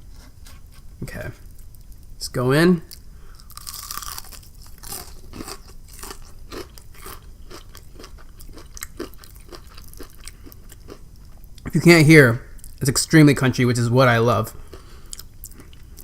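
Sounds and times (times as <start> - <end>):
crunching and chewing fried chicken: 3.3 - 11.6, 14.6 - 16.0.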